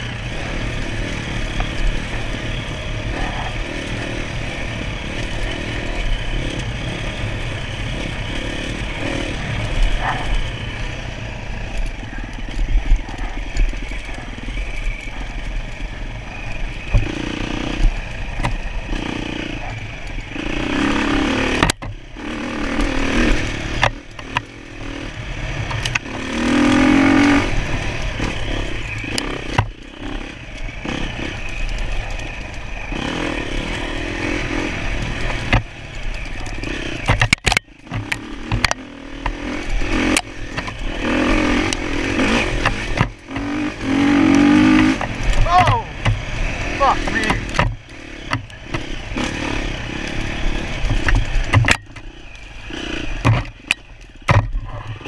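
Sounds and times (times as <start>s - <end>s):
dirt bike engine revving: 0.0s - 55.0s
knocks and clatter: 35.2s - 39.4s, 41.7s - 43.6s, 47.2s - 48.9s, 50.7s - 52.1s, 53.2s - 55.0s.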